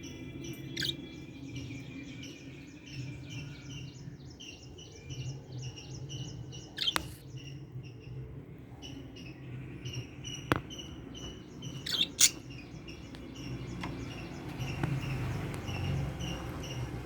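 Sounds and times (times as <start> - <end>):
lovebirds chirping: 0.0 - 17.0
sharp click: 6.8 - 7.2.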